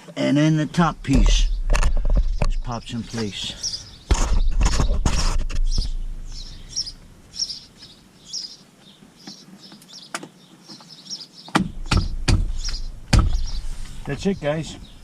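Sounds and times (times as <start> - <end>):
sharp knocks: 0.9 - 3.0, 4.0 - 6.6, 11.5 - 13.6
small bird chirping: 1.3 - 15.0.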